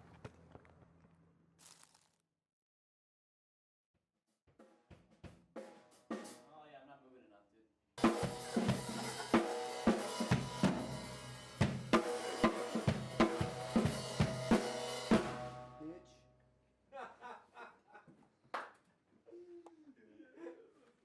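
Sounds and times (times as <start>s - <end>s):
live rock band: 8.0s - 15.6s
drum kit hits: 8.0s - 15.8s.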